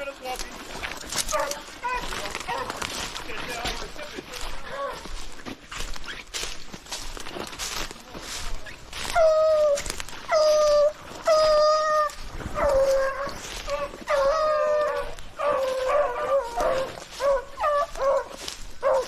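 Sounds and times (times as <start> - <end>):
dogs baying: 0.8 - 6.0, 8.4 - 19.0.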